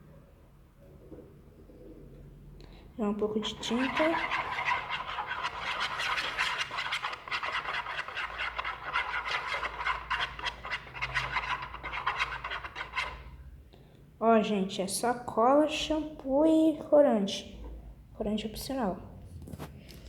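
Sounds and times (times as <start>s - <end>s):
spoon scraping in plastic pot: 3.4s - 13.4s.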